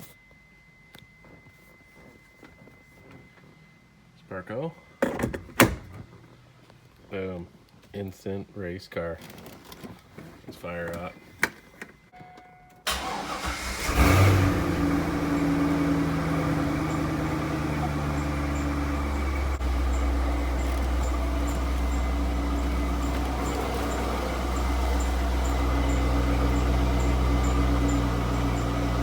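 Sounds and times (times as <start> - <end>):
car engine starting and idling: 12.8 - 29.0.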